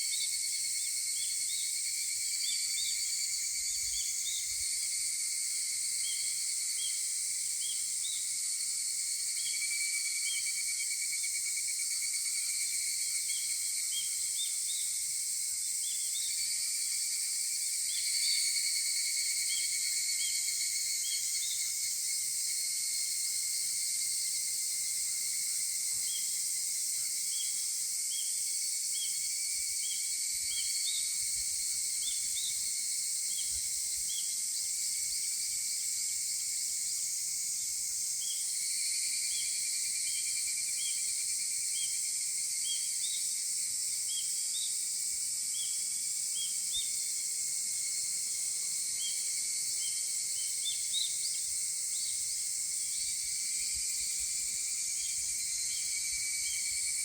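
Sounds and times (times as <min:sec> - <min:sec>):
cicadas calling: 0:24.3 - 0:57.0.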